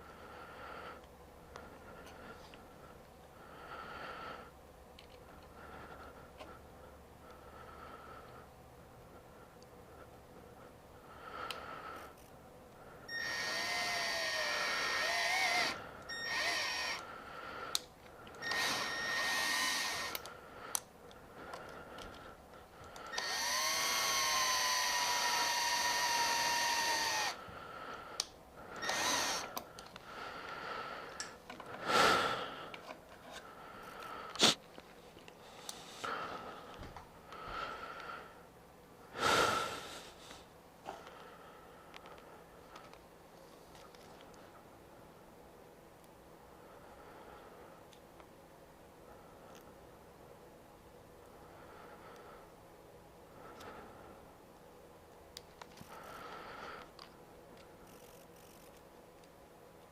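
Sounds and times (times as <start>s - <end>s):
power drill whining: 13.1s - 17.0s, 18.4s - 20.3s, 23.0s - 27.4s, 28.8s - 29.6s.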